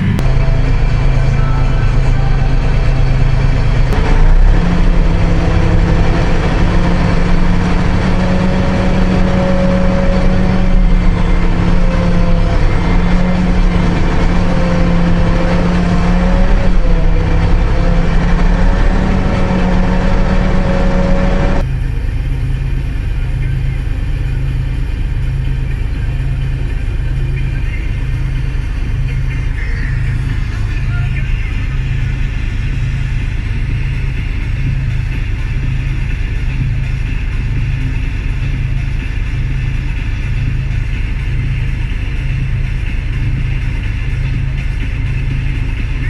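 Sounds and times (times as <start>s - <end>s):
tractor diesel engine droning: 0.0s - 46.0s.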